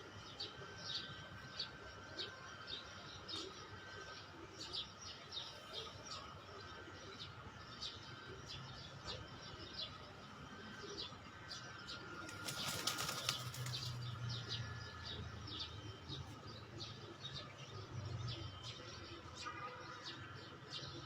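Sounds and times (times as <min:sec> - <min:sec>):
small birds chirping: 0:10.9 - 0:19.2
bird wings flapping: 0:12.3 - 0:14.0.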